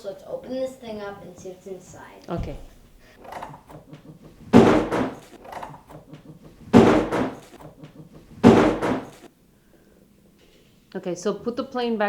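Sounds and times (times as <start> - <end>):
loud thumps: 2.3 - 9.3.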